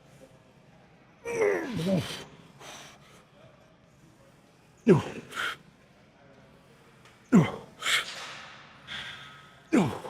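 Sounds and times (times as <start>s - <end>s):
man grunting: 4.9s - 5.4s, 7.3s - 7.8s, 9.7s - 10.0s.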